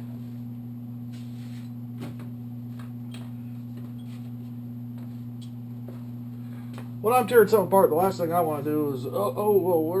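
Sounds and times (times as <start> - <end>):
low electrical hum: 0.0 - 10.0.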